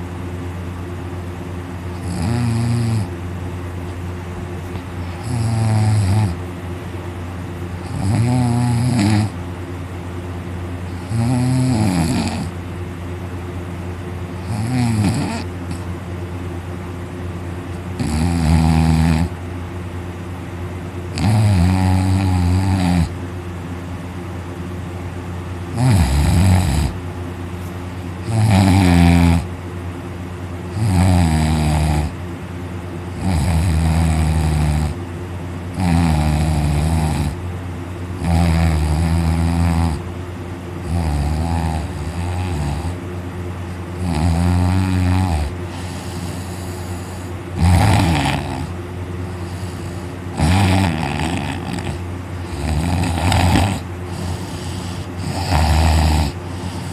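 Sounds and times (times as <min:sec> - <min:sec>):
person snoring loudly: 0:02.0 - 0:03.1, 0:05.0 - 0:06.4, 0:07.8 - 0:09.4, 0:10.9 - 0:12.5, 0:14.4 - 0:15.8, 0:18.0 - 0:19.4, 0:21.1 - 0:23.2, 0:25.7 - 0:27.0, 0:28.2 - 0:29.5, 0:30.8 - 0:32.2, 0:33.2 - 0:35.0, 0:35.7 - 0:37.4, 0:38.2 - 0:40.0, 0:40.8 - 0:43.0, 0:44.0 - 0:56.9.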